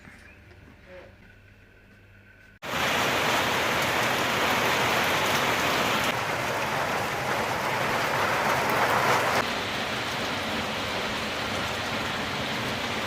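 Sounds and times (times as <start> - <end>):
heavy rain downpour: 2.6 - 13.0.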